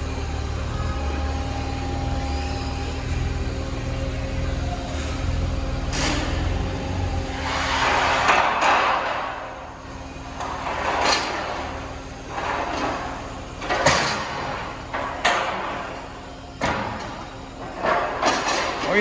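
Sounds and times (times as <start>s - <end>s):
steel rasping and scraping: 7.3s - 8.6s.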